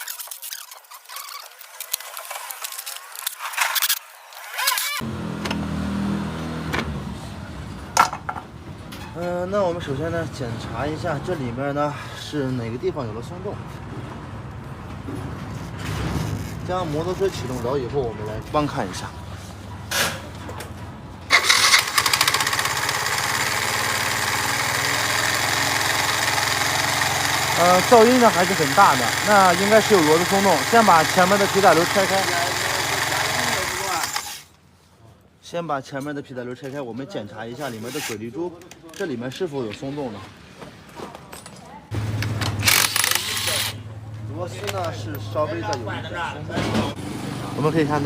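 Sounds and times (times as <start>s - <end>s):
scooter engine idling: 21.3s - 34.3s.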